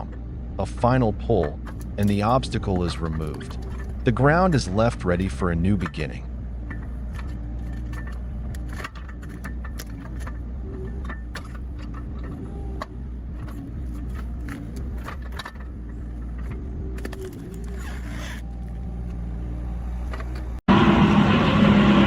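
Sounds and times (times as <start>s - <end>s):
excavator engine running: 0.0s - 22.0s
clanks and knocks: 1.3s - 18.0s.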